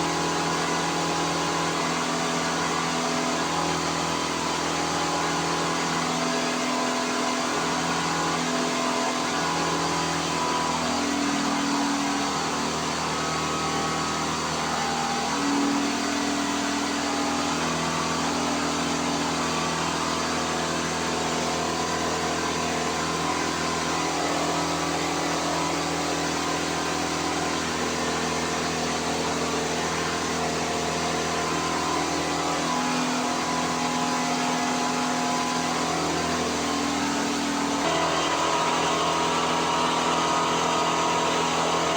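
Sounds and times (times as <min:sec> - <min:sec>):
stepper motors whining: 0:37.6 - 0:41.9.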